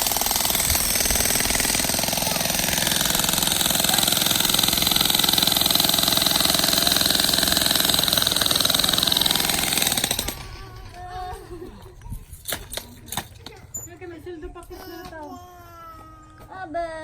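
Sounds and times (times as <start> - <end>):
jackhammer pounding rock: 0.0 - 11.0.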